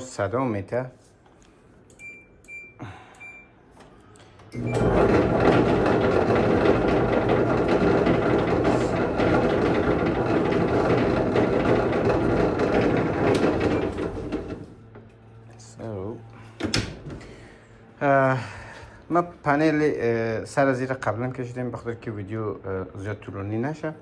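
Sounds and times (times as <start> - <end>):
control panel beeps: 1.9 - 3.6
clothes dryer running: 2.8 - 19.0.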